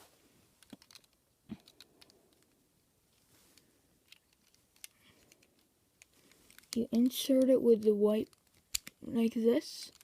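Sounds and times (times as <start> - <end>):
plastic puzzle cube clicks: 0.6 - 2.6, 4.0 - 9.0, 9.8 - 10.0.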